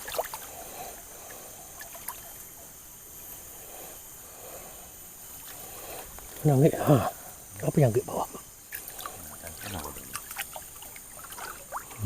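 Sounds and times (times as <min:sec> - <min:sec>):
river water flowing: 0:00.0 - 0:02.6, 0:05.1 - 0:12.0.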